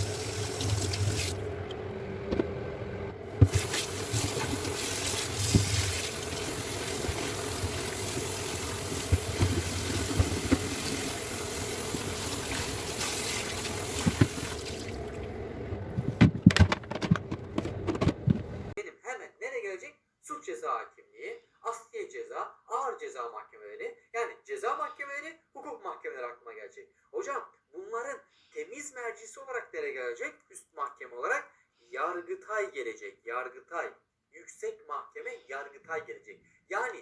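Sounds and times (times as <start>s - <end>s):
tap water running into sink: 0.0s - 1.6s, 3.4s - 18.4s
dishes clinking and knocking: 16.0s - 18.6s.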